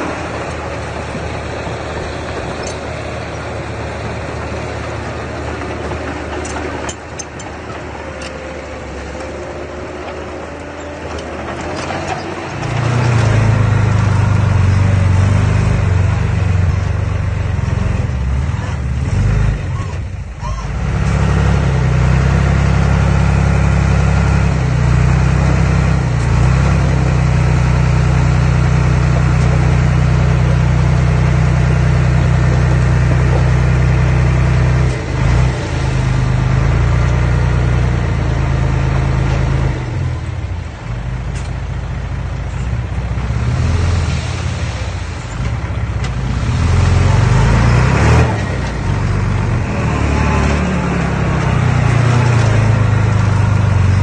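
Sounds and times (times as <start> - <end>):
heavy machine engine running: 0.0 - 54.0.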